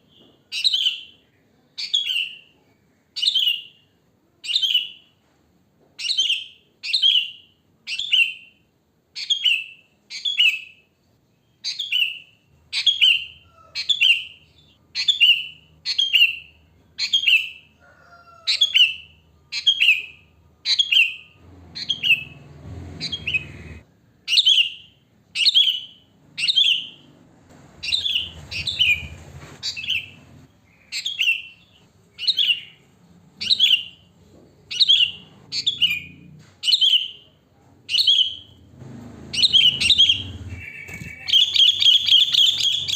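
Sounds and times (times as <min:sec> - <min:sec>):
bulbul calling: 0:27.8 - 0:32.8, 0:39.3 - 0:42.9.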